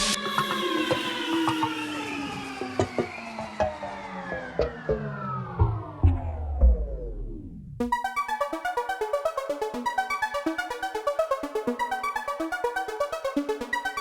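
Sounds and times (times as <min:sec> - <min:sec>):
downward pitch sweep: 0:00.0 - 0:07.7
pulsed synthesizer notes: 0:00.0 - 0:14.0.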